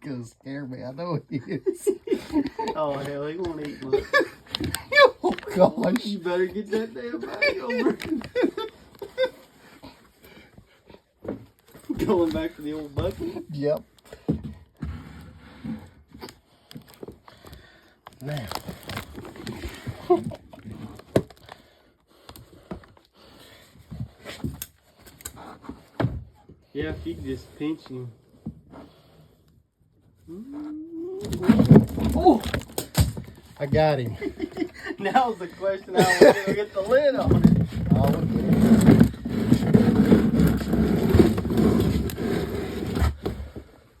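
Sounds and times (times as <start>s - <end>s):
scrapes: 30.3s - 43.9s.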